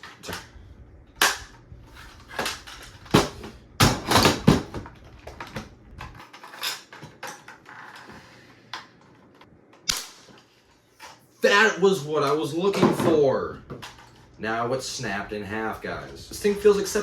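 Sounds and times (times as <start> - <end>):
plastic parts clicking and knocking: 2.2 - 11.2.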